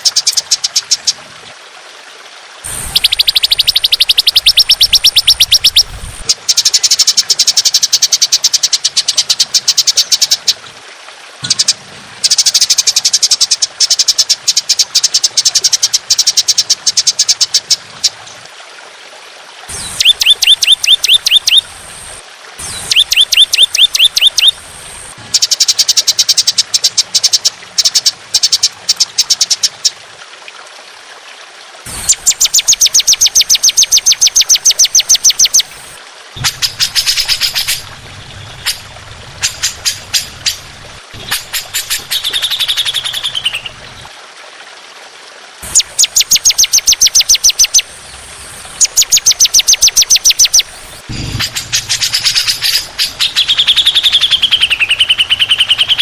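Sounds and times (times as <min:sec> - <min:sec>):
bird rapid harsh note bursts: 0:02.7 - 0:06.2, 0:19.7 - 0:21.6, 0:22.6 - 0:24.6, 0:36.4 - 0:43.7, 0:48.8 - 0:56.0.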